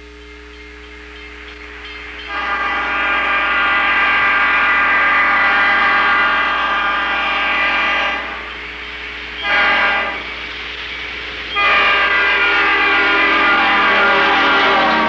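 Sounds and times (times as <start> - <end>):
train horn blasts: 1.5 - 15.0.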